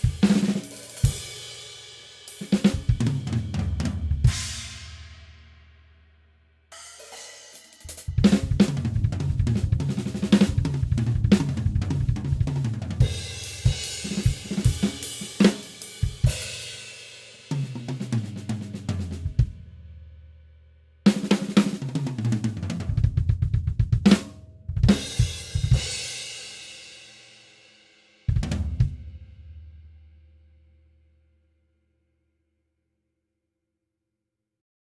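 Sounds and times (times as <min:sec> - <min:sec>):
acoustic drum kit playing: 0:00.0 - 0:01.4, 0:02.3 - 0:05.1, 0:06.7 - 0:19.6, 0:21.1 - 0:26.2, 0:28.3 - 0:29.5.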